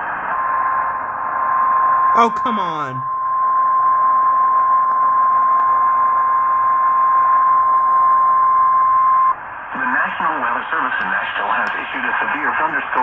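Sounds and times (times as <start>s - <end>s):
steady high alert tone: 2.2s - 3.1s.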